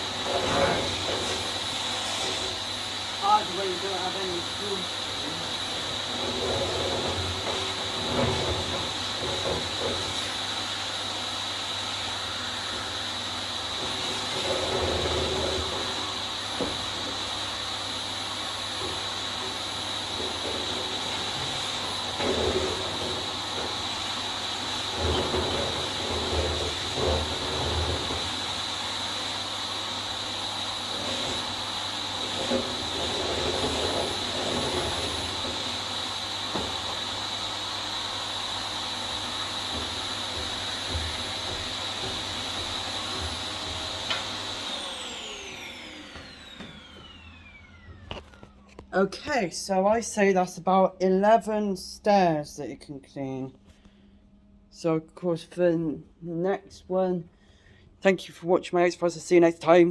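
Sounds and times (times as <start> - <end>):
vacuum cleaner whining: 0.0 - 50.3
vacuum bumping on stairs: 18.6 - 28.8, 30.8 - 37.3, 38.1 - 47.2.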